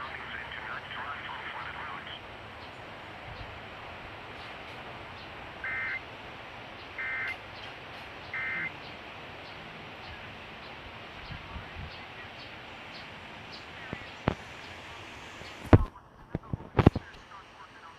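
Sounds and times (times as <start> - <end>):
steady hiss: 0.0 - 17.9.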